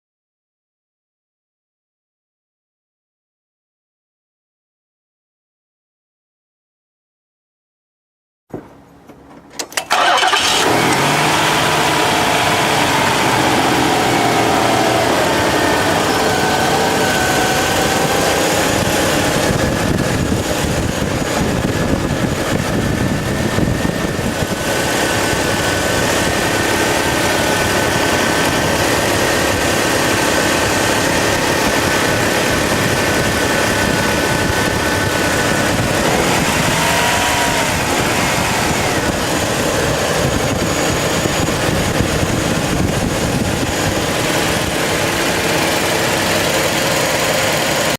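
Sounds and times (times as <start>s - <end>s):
engine whine: 8.7s - 47.9s
car engine starting and idling: 9.5s - 47.9s.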